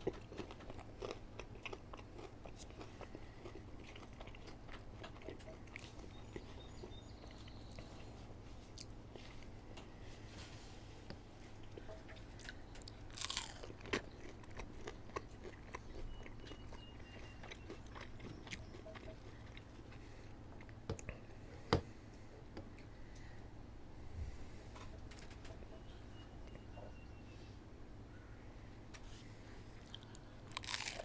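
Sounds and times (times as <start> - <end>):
chewing and crunchy bites: 0.0 - 9.5, 11.4 - 21.2, 29.8 - 31.0.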